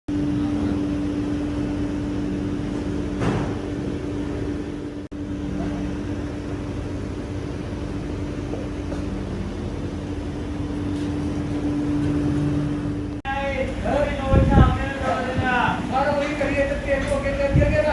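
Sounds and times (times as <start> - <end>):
workshop machinery hum: 0.1 - 17.9.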